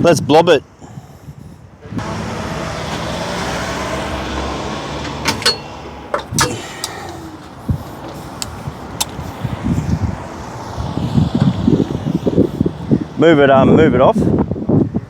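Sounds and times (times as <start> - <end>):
vehicle engine and road noise: 0.0 - 15.0
sharp clicks and knocks: 5.0 - 9.2.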